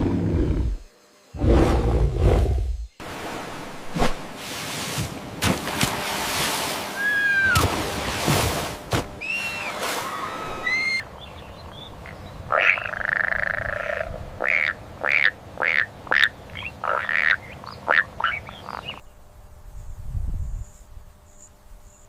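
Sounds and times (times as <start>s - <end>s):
animal calling: 9.2s - 11.0s.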